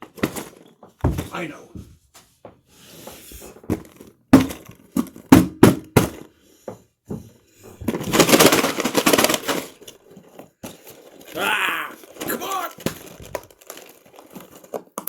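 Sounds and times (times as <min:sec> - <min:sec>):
knocks and taps on cardboard box: 0:03.8 - 0:07.3
crackling rustle of cardboard: 0:07.7 - 0:15.0.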